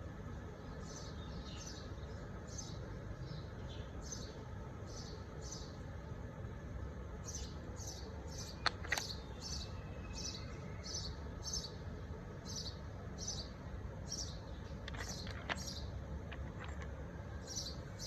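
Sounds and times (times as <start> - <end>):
small bird chirping: 7.2 - 18.0
sharp clicks: 8.5 - 9.2.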